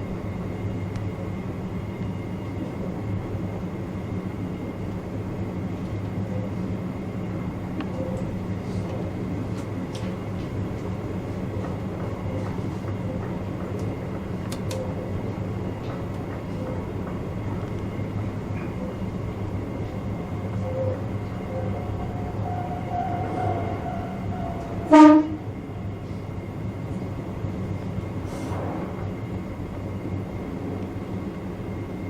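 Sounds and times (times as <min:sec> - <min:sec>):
electric train running hum: 0:00.0 - 0:32.0
rail clicks: 0:00.0 - 0:32.0
train horn blast: 0:21.4 - 0:25.6.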